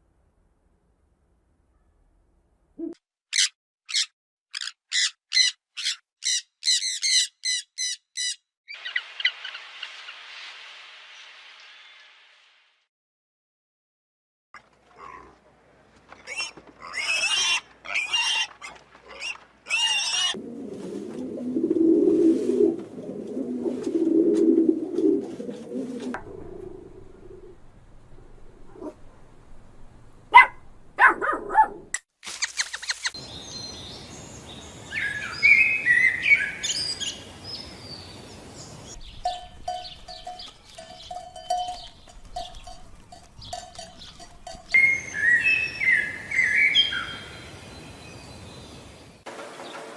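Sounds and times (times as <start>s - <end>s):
high animal calls: 16.2s - 20.4s
sharp animal cries: 16.3s - 20.4s
low rumbling animal call: 26.1s - 29.2s
high chirping: 32.6s - 48.9s.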